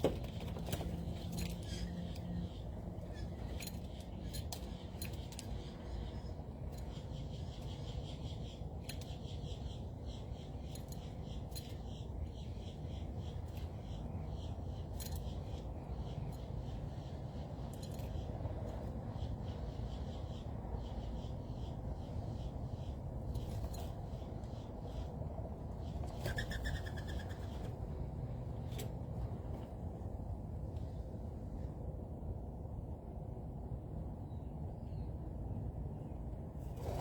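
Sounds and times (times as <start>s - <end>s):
small birds chirping: 0.0s - 30.1s.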